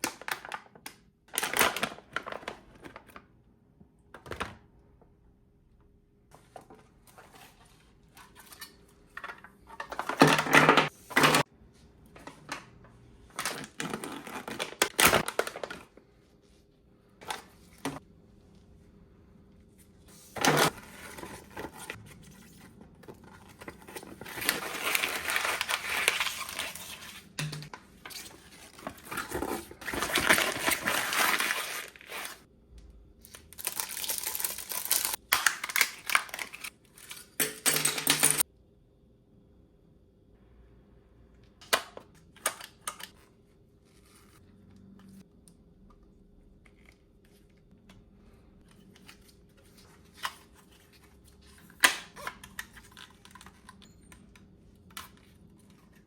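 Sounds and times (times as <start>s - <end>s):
packaging crinkling and tearing: 0.0s - 3.2s, 13.4s - 16.0s, 23.3s - 27.4s, 28.1s - 32.5s, 33.2s - 37.2s.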